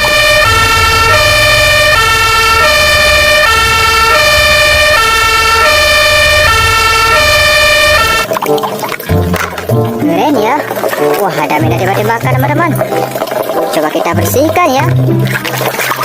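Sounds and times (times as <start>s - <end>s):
two-tone fire engine siren: 0.0s - 8.4s.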